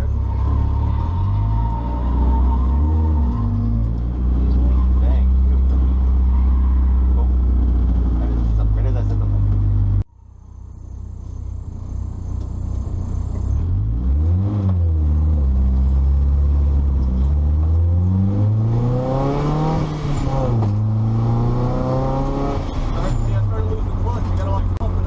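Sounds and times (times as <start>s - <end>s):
car engine revving: 12.0s - 25.0s.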